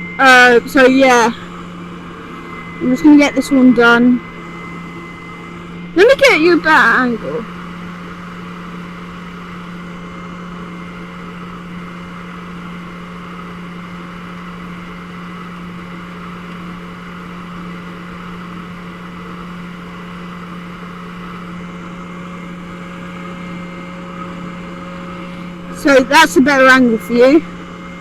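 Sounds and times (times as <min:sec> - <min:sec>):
dust suction running: 0:00.0 - 0:10.0
band saw running: 0:00.0 - 0:13.6, 0:20.3 - 0:28.0.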